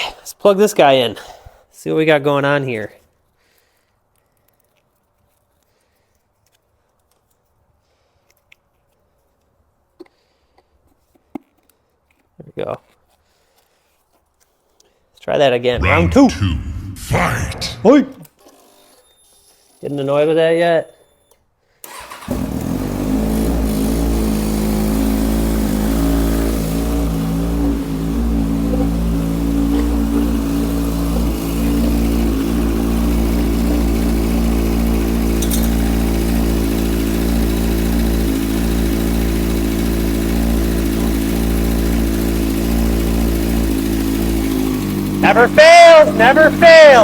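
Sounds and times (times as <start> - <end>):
motorcycle engine starting and idling: 21.9 - 47.0.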